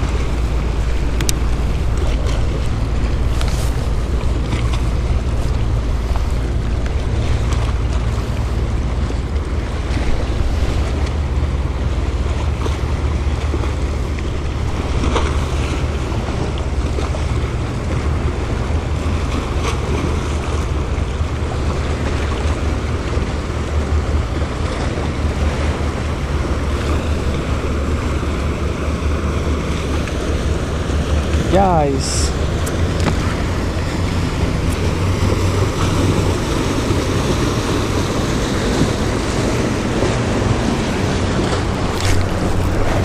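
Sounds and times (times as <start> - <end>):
water lapping against kayak: 0.0 - 43.0
wind buffeting microphone: 0.0 - 43.0.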